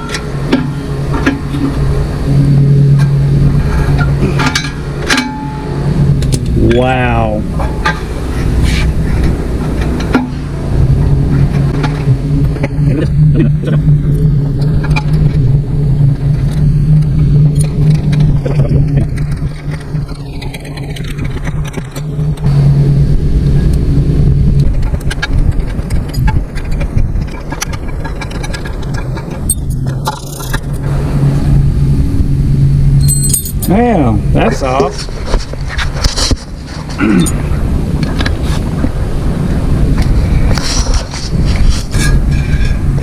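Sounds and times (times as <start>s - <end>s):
engine running: 0.0s - 43.0s
hand tools clicking and scraping: 2.9s - 6.5s.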